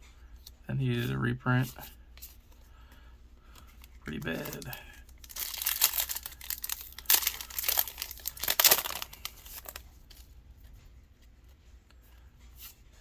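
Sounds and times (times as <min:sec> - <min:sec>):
foil wrapper tearing and crinkling: 0:04.0 - 0:10.2.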